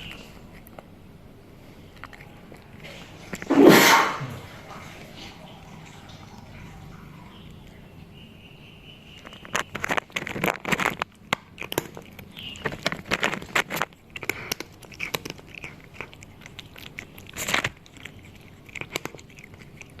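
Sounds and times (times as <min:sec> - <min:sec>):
cat crunching hard snack: 0:00.0 - 0:04.3, 0:09.1 - 0:20.0.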